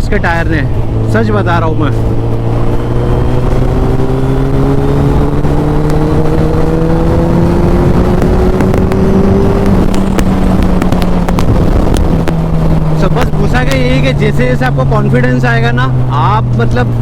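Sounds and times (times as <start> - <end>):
motorcycle engine pulling: 1.9 - 15.2.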